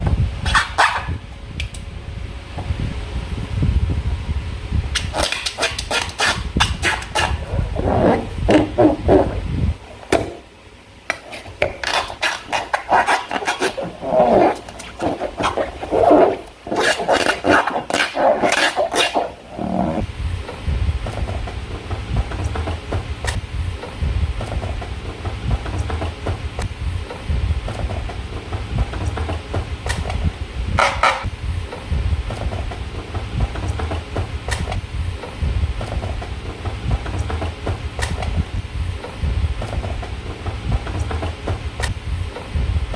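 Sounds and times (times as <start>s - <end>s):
low handling rumble: 7.2s - 10.5s.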